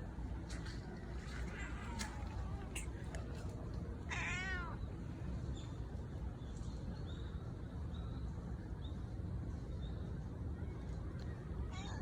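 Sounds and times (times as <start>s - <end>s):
low outdoor rumble: 0.0s - 12.0s
cat meow: 4.1s - 4.9s, 11.7s - 12.0s.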